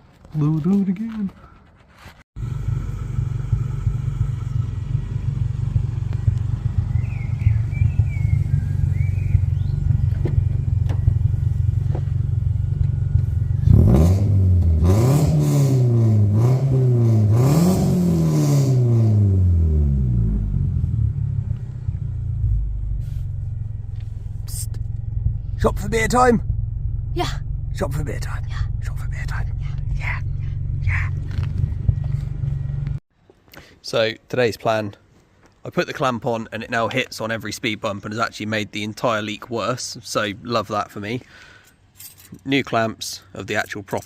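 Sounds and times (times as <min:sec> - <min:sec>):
car engine idling and revving: 0:02.4 - 0:33.0.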